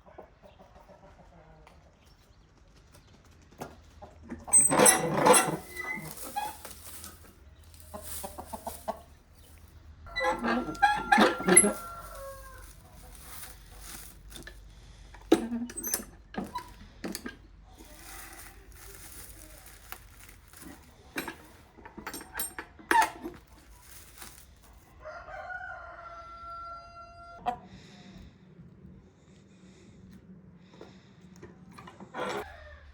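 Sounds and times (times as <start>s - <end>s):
chickens clucking: 0.0s - 2.3s, 3.6s - 22.0s
rooster crowing: 10.1s - 12.9s, 24.9s - 27.4s, 32.4s - 32.9s.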